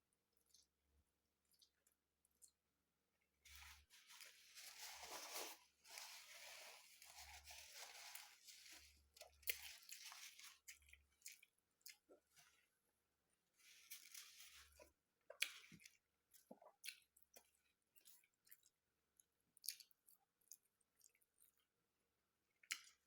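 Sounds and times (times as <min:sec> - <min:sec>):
food being chewed: 0:01.4 - 0:02.7, 0:08.6 - 0:12.8, 0:13.7 - 0:21.8, 0:22.5 - 0:23.0.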